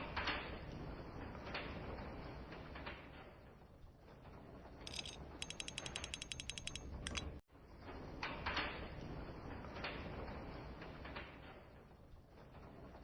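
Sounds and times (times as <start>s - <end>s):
ratchet-like mechanical clicking: 4.9s - 7.4s.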